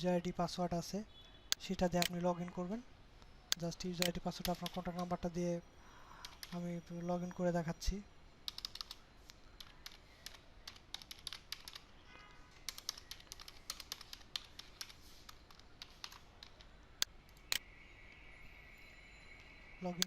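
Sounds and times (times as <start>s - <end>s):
faint steady high whine: 0.0s - 20.0s
computer keyboard typing: 3.5s - 5.2s, 6.2s - 6.7s, 8.4s - 9.0s, 9.6s - 16.8s.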